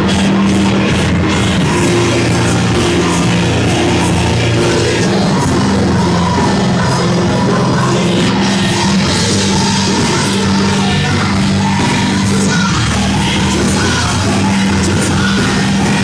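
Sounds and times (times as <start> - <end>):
loud rock music with singing: 0.0 - 16.0.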